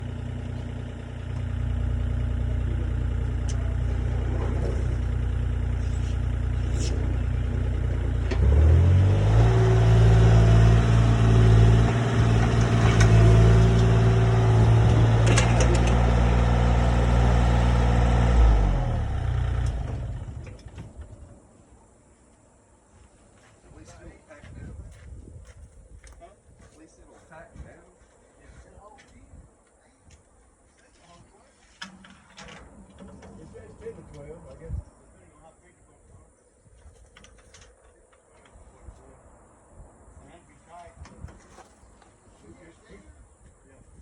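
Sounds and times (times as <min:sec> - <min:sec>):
engine running and revving: 0:05.8 - 0:20.7.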